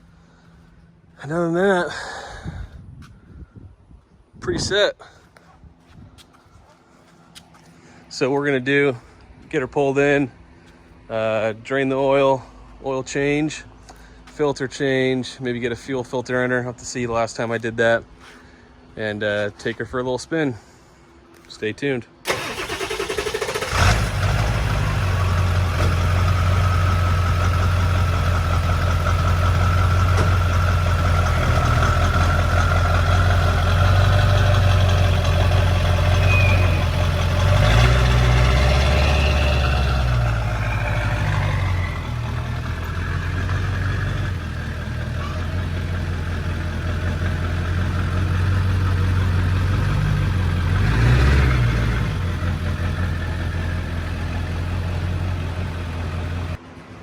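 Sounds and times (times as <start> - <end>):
diesel engine starting and rumbling: 22.2 - 57.0.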